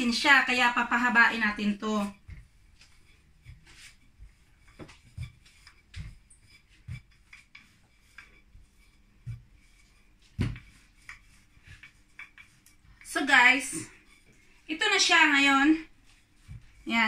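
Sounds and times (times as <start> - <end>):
dough rolling knocks and thuds: 2.0 - 13.7.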